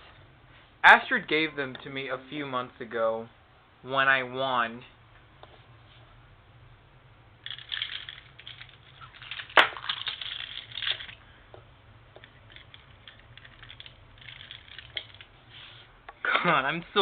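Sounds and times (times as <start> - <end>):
handling noise rustling: 7.4 - 16.0.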